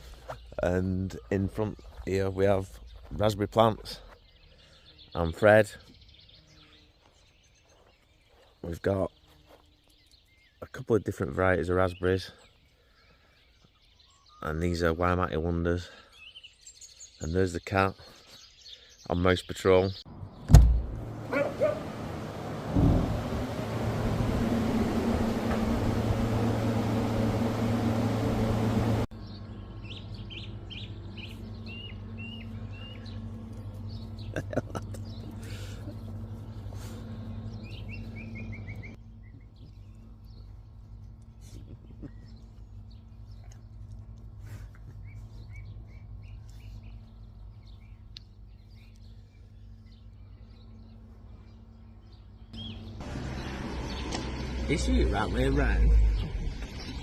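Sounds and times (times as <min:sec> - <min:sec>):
bird chirping: 0:11.6 - 0:15.0, 0:29.1 - 0:57.0
car engine hum: 0:20.1 - 0:41.0, 0:52.6 - 0:57.0
road noise: 0:20.1 - 0:41.2, 0:52.6 - 0:57.0.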